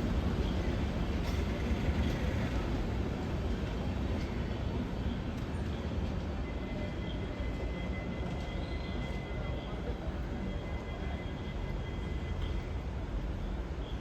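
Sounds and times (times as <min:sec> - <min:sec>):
train coaches rumbling: 0:00.0 - 0:13.8
train brake squeal: 0:04.2 - 0:14.0.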